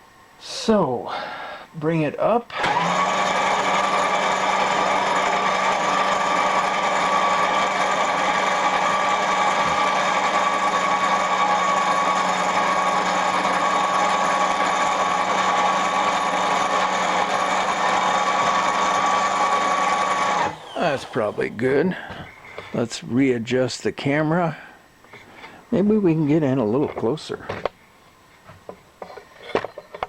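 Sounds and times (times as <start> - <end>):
milling machine whining: 2.5 - 22.8.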